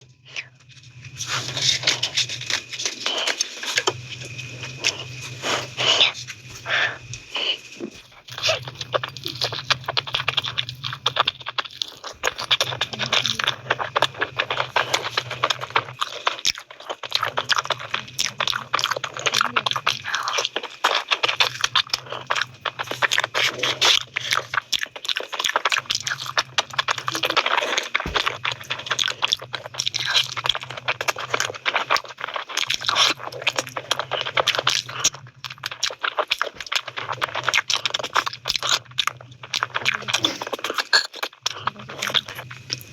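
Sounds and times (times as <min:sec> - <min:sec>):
low hum: 0:00.0 - 0:16.0
person chewing crunchy food: 0:00.2 - 0:42.9
wet mouth clicks: 0:07.4 - 0:42.9.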